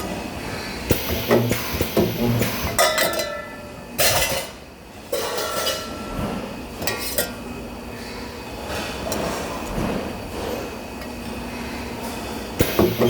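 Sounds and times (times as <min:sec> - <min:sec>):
machinery background: 0:00.5 - 0:03.3, 0:12.5 - 0:13.0.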